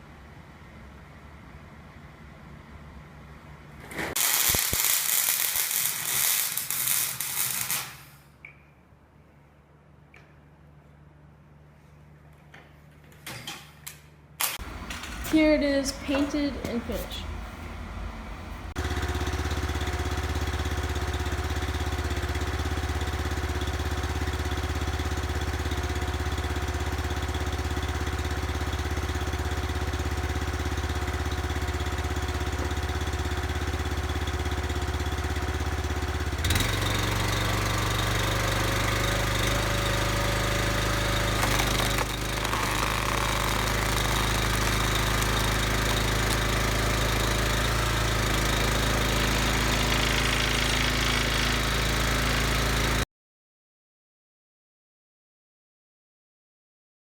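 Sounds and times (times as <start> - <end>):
gas engine running: 14.6 - 53.0.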